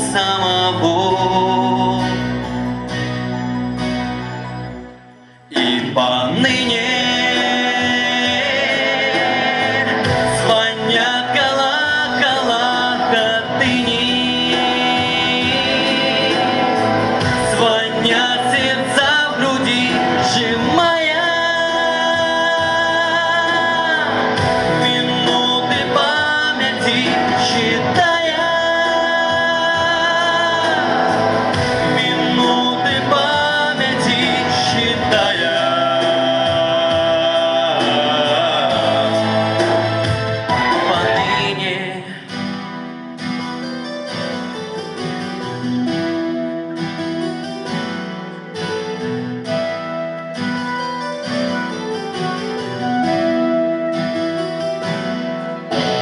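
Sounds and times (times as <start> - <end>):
man singing slow song: 0.0 - 2.8, 5.5 - 42.9
instrumental accompaniment: 0.0 - 56.0.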